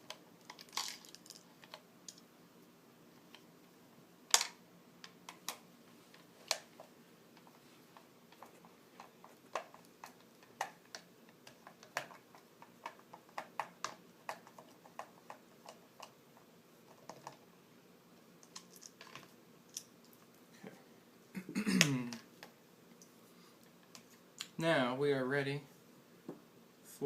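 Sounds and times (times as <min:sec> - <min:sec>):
plastic parts clicking and tapping: 0:04.3 - 0:17.4, 0:18.4 - 0:19.8.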